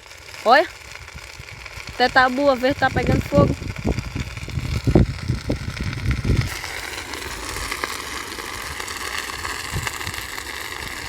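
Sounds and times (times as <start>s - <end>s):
cattails crackling in fire: 0.0s - 11.0s
low rumble: 2.7s - 7.9s.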